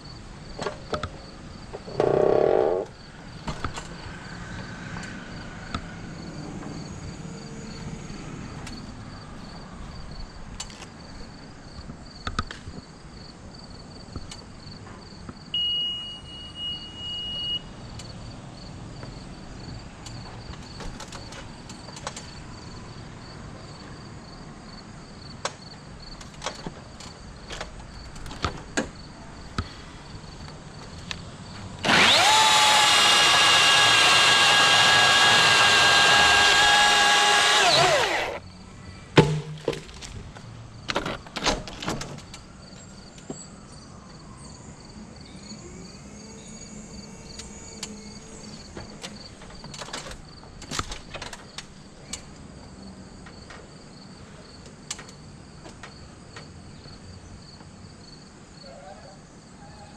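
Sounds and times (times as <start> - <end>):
high insect buzz: 1.8 - 3.1, 45.4 - 49.4
motor running with high whine: 31.8 - 38.4.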